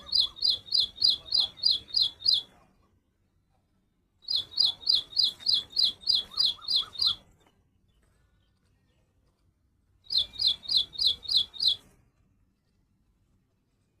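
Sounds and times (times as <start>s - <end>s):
hummingbird chirping: 0.0s - 2.5s, 4.2s - 7.2s, 10.1s - 11.8s.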